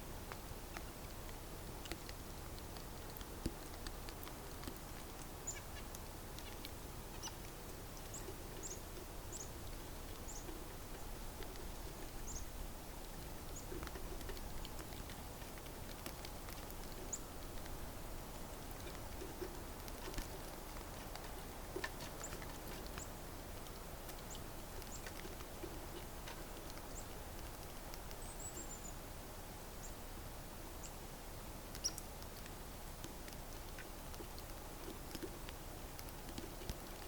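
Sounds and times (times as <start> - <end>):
faint steady hiss: 0.0 - 37.0
light ticks: 0.2 - 9.5, 13.0 - 28.7
small birds chirping: 0.2 - 37.0.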